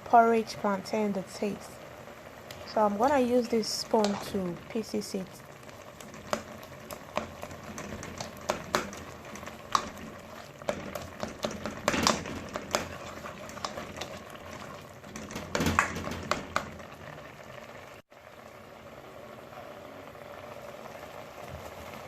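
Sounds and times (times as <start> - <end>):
water boiling: 0.0 - 22.0
spoon scraping against pot: 6.0 - 16.6.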